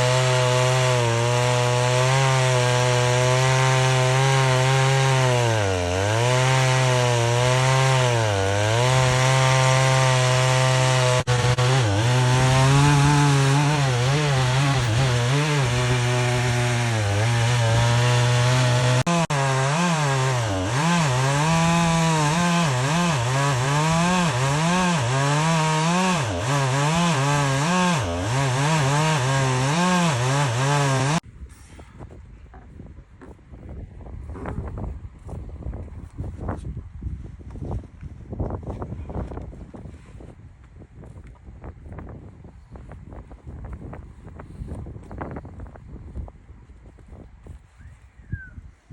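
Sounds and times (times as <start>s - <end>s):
chainsaw cutting wood: 0.0s - 31.2s.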